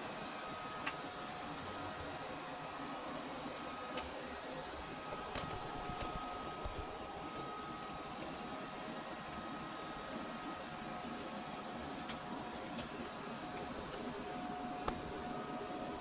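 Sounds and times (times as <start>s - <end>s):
robot vacuum motor whirring: 4.8s - 8.4s.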